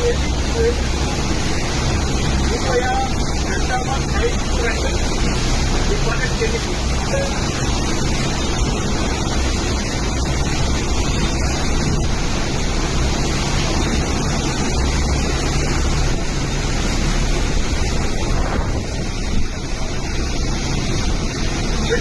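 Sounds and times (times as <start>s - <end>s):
rushing water: 0.0s - 22.0s
storm wind rushing: 17.4s - 21.6s.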